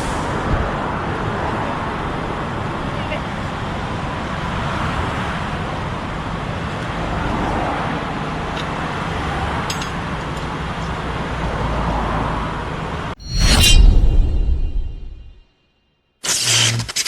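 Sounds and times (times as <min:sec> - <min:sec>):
vehicle road noise: 0:00.0 - 0:15.4.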